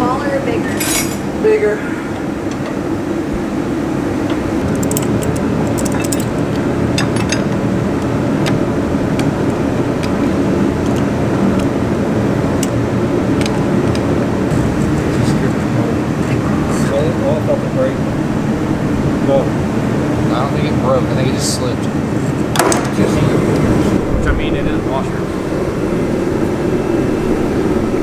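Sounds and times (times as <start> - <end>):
mechanical hum: 0.0 - 28.0
hand tools clinking on metal: 0.6 - 1.4, 4.3 - 8.6.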